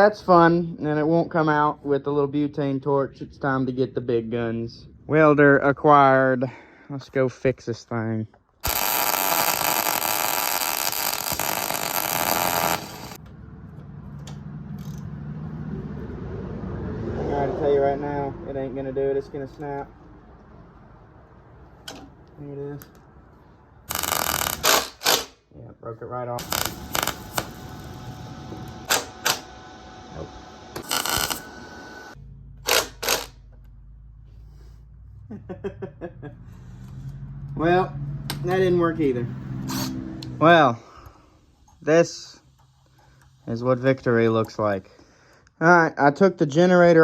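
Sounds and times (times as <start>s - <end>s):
loud metalworking noise: 8.6s - 13.2s, 26.4s - 32.1s
short rasping burst: 8.6s - 13.2s, 23.9s - 25.4s, 26.4s - 28.1s, 32.6s - 33.4s.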